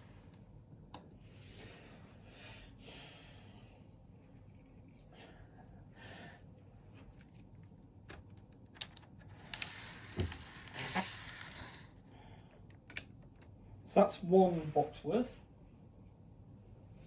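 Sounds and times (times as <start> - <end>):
faint breathing: 1.2 - 4.0.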